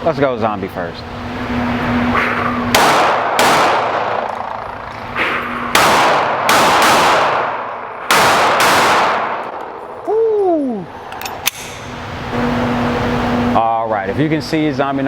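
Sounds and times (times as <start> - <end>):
pistol shots with ringing tail: 2.1 - 9.7.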